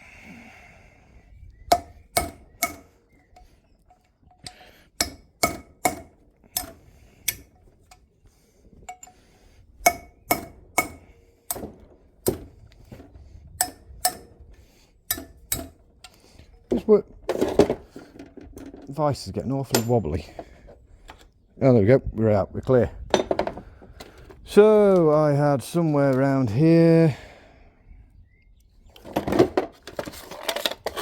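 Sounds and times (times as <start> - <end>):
hammer striking metal: 1.7 - 2.9, 5.0 - 7.4, 9.8 - 11.7, 13.6 - 14.3, 15.1 - 15.8.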